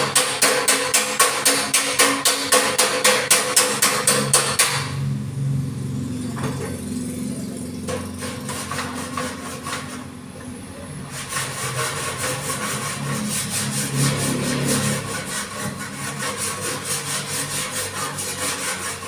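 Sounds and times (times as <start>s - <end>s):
hand tool strokes on sheet metal: 0.0s - 4.9s, 7.8s - 10.2s, 11.0s - 19.0s
low engine-like hum: 4.9s - 8.4s.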